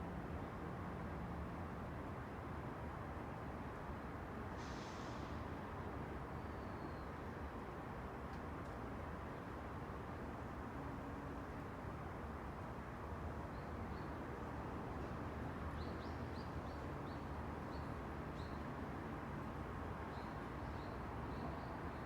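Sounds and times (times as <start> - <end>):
wind: 0.0 - 22.0
distant road traffic: 4.3 - 9.2.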